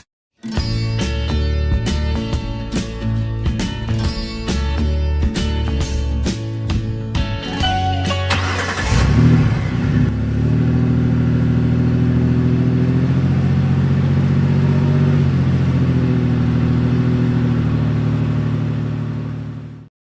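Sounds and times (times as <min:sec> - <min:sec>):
engine idling: 0:08.3 - 0:19.8.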